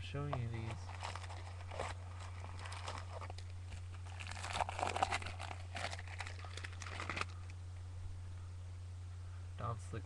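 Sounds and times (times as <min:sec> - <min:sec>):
low electrical hum: 0:00.0 - 0:10.0
card wrappers rustling and crinkling: 0:00.2 - 0:07.6.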